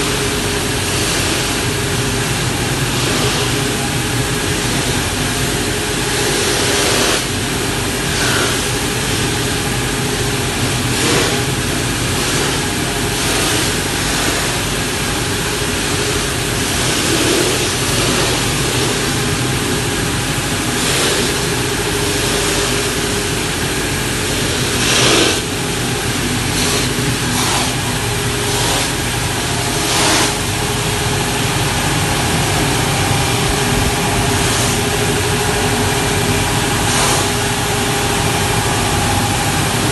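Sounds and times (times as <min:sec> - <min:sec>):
sanding machine humming: 0:00.0 - 0:39.9.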